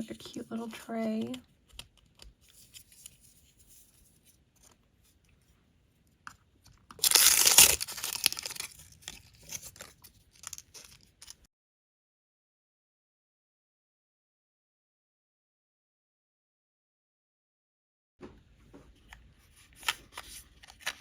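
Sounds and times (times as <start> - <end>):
plastic wrapper crinkling: 6.8 - 11.5
plastic packaging tearing: 6.9 - 11.4.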